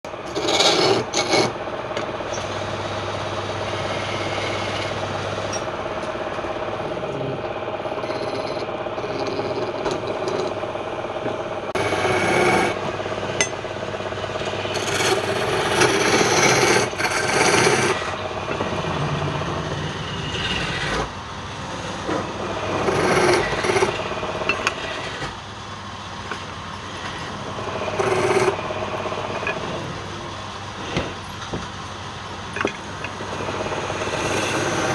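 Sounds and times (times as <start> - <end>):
tool rasping on spinning wood: 0.1 - 1.7, 2.4 - 5.7, 6.8 - 10.7, 11.7 - 13.5, 14.3 - 21.2, 22.0 - 25.4, 26.8 - 29.5, 33.2 - 34.9
wood lathe humming: 0.1 - 25.4, 26.3 - 30.6, 33.0 - 34.9.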